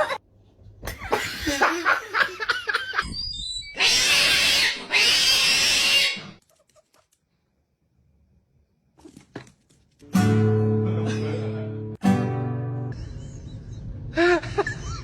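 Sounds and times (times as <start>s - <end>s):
animal harsh cries: 3.7s - 6.4s.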